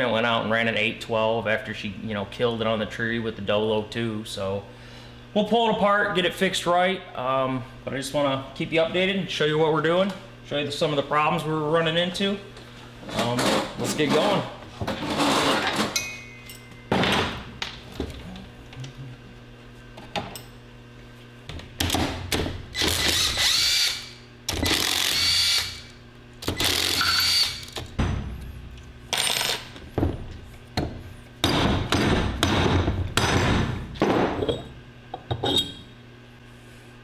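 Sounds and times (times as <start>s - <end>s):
power driver bursts: 22.8s - 27.8s.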